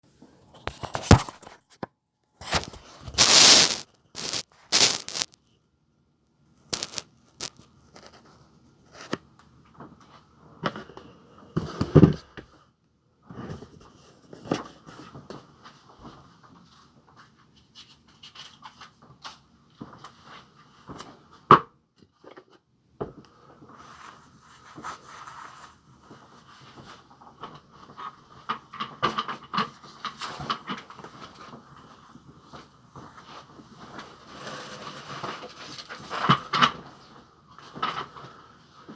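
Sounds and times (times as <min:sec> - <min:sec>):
handling scrapes and rustles: 0:02.4 - 0:05.3, 0:33.2 - 0:36.4.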